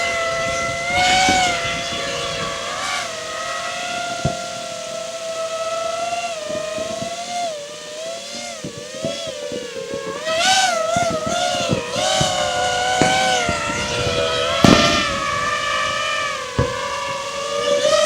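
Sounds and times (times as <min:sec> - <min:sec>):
drone motors whining: 0:00.0 - 0:18.0
sharp pops: 0:08.3 - 0:18.0.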